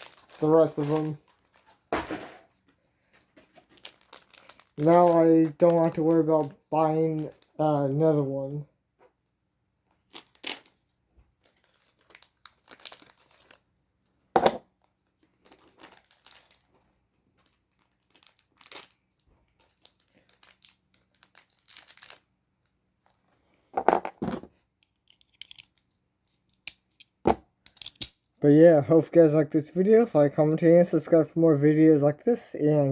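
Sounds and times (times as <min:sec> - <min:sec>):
plastic packaging crinkling: 0:00.0 - 0:01.8, 0:03.2 - 0:07.6, 0:10.0 - 0:10.8, 0:11.4 - 0:14.2, 0:14.8 - 0:23.2.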